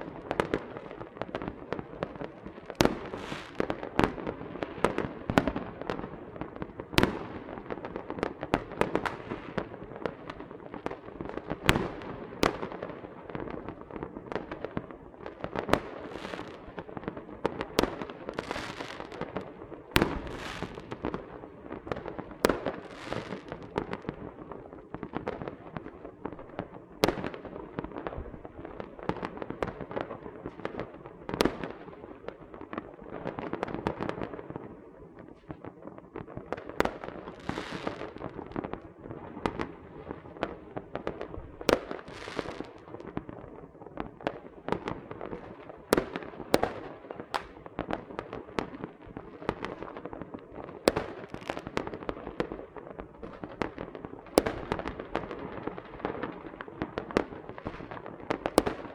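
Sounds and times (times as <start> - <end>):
firecrackers popping and banging: 0.0 - 58.9
sharp loud firework cracks: 46.0 - 48.7, 54.4 - 55.3.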